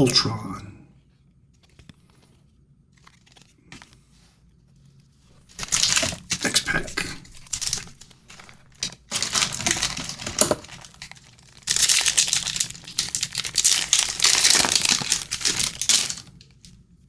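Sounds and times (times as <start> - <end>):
card pack wrapper crinkling and tearing: 3.0 - 4.0, 5.4 - 16.8.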